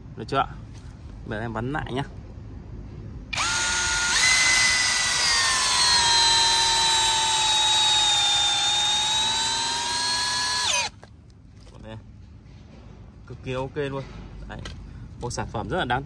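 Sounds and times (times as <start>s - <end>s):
cordless drill motor whining: 3.4s - 11.0s.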